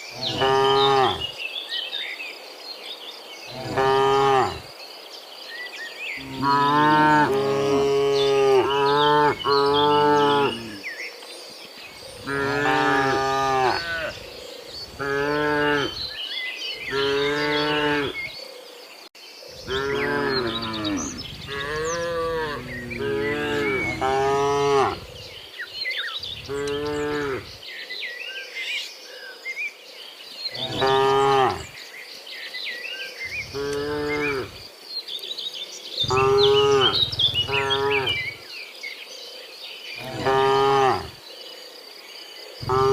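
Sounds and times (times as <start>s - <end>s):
faint insect or bird chirps: 0.0s - 42.9s
cows mooing: 0.2s - 1.3s, 3.5s - 4.6s, 6.2s - 10.8s, 12.2s - 14.2s, 14.9s - 16.0s, 16.9s - 18.2s, 19.7s - 25.3s, 26.3s - 27.6s, 30.6s - 31.7s, 33.4s - 34.6s, 36.0s - 38.4s, 40.0s - 41.2s, 42.6s - 42.9s.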